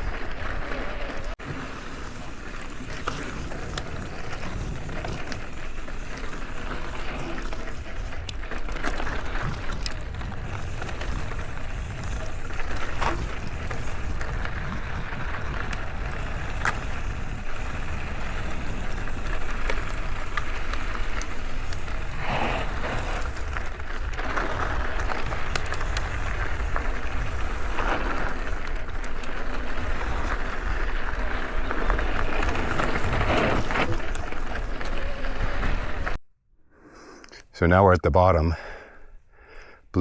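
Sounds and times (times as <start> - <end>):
bike clicks and rattles: 0.0 - 36.2
bike tyres crunching on gravel: 0.0 - 36.2.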